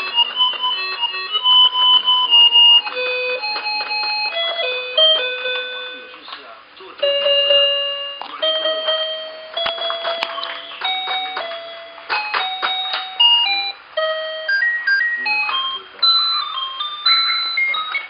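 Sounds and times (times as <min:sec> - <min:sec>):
toy keyboard beeping melody: 0:00.0 - 0:06.2, 0:07.0 - 0:18.0
percussive clicks and hits: 0:09.6 - 0:13.1.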